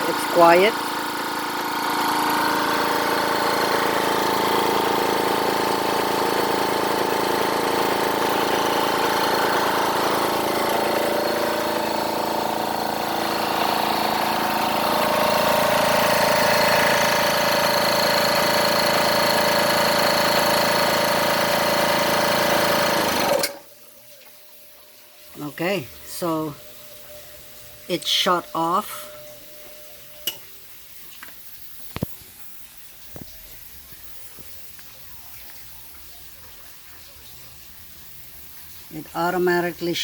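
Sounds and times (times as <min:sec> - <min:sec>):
air compressor running: 0:00.0 - 0:36.7.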